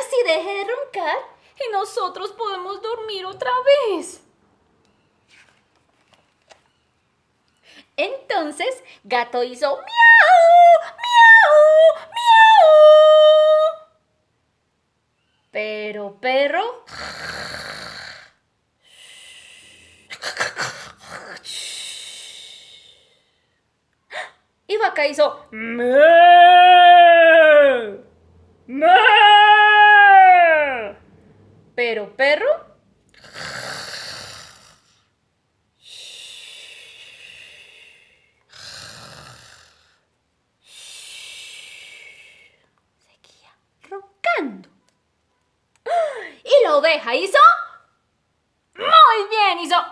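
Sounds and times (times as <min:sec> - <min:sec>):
woman imitating snoring: 0:16.9 - 0:18.4, 0:33.2 - 0:35.0, 0:38.5 - 0:40.0.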